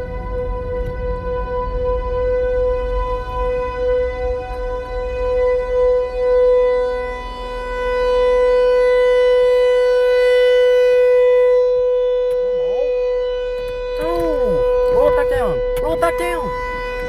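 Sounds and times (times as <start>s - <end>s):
warning siren steady tone: 0.0s - 17.0s
faint voice: 14.0s - 17.0s.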